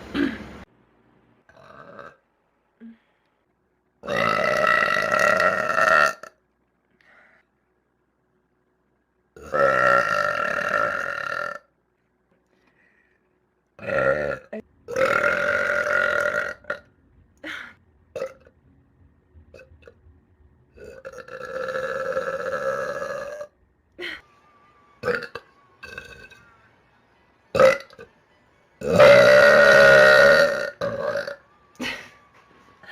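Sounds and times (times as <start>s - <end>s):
person burping: 1.5s - 2.2s, 4.0s - 6.4s, 9.4s - 11.7s, 13.8s - 18.5s, 20.8s - 24.2s, 25.0s - 26.4s, 28.8s - 32.1s.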